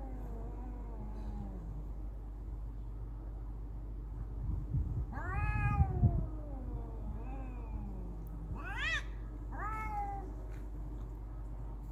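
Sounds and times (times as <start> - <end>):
cats yowling: 5.1 - 10.4.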